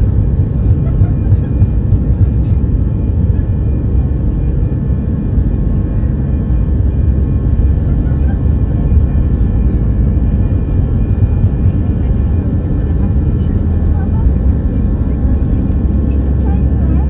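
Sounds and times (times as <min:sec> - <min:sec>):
jet engine rumble: 0:00.0 - 0:17.0.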